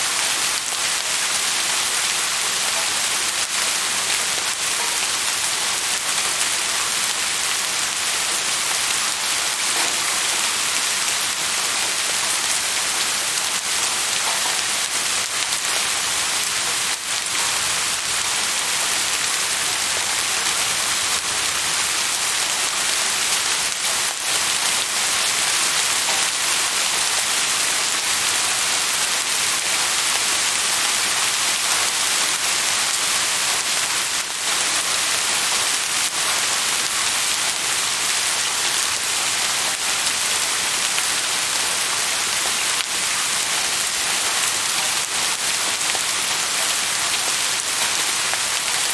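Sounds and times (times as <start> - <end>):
raindrops ticking on surfaces: 0.0 - 48.9
steady rain falling: 0.0 - 48.9.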